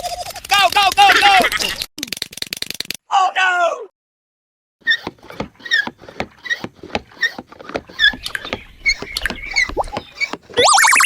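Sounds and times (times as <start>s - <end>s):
cartoon squeaky clicks: 8.0s - 11.0s.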